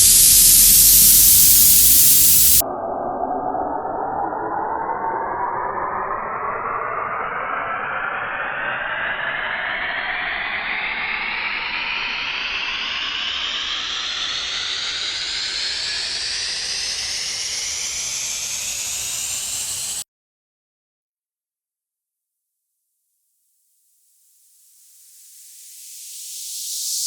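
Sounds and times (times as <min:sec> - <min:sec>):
rising filtered noise sweep: 0:00.0 - 0:20.0.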